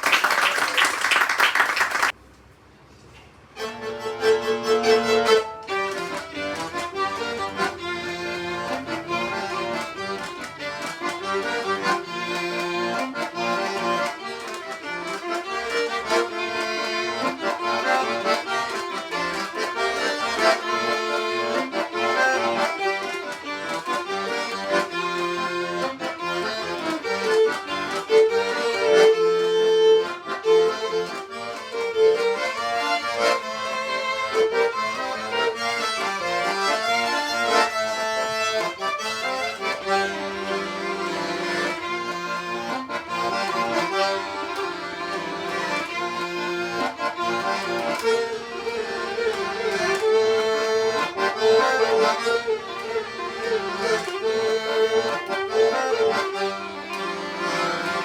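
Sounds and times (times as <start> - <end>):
applause: 0.0 - 2.2.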